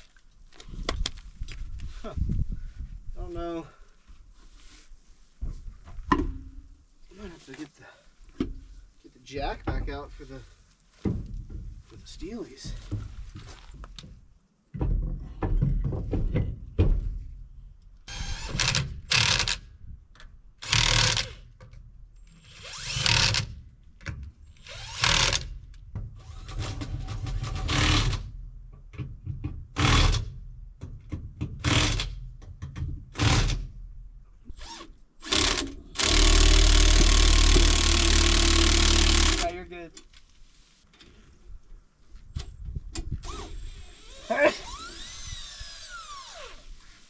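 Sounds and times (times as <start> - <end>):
power tool bursts: 18.1 - 19.6, 20.6 - 21.4, 22.4 - 23.6, 24.6 - 25.5, 34.6 - 39.5, 43.2 - 46.8.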